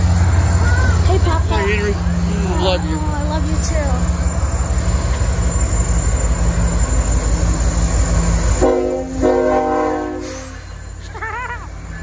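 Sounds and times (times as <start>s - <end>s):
freight train rumbling on rails: 0.0s - 12.0s
locomotive air horn chord: 8.6s - 10.7s.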